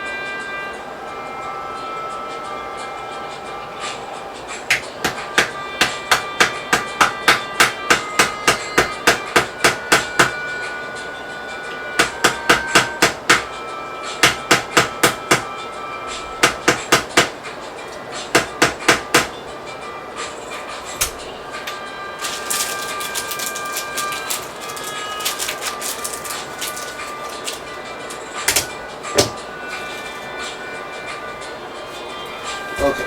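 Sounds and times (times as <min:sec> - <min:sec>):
hammer blows: 0:14.2 - 0:15.5.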